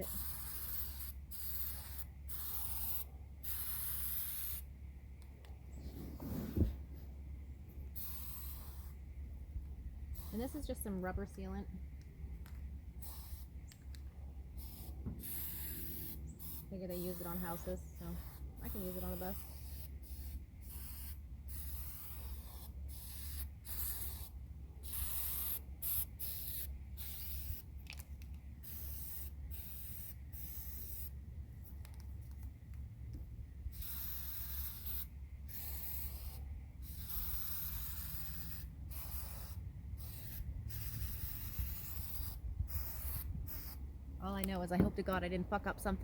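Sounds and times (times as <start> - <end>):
aerosol can spraying hiss: 0.0 - 4.7, 8.0 - 9.0, 10.2 - 10.8, 13.0 - 13.5, 14.6 - 27.7, 28.6 - 31.2, 33.7 - 43.8.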